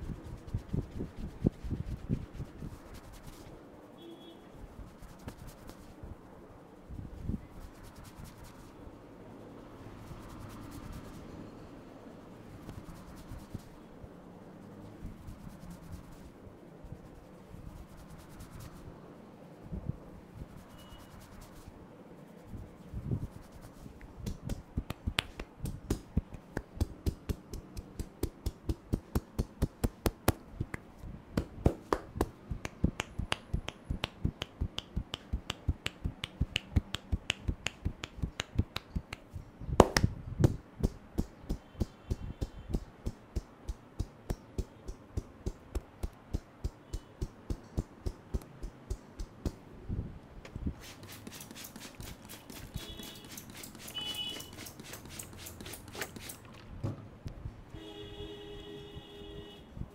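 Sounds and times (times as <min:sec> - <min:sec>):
hands slapping a head: 0:23.5 - 0:49.6.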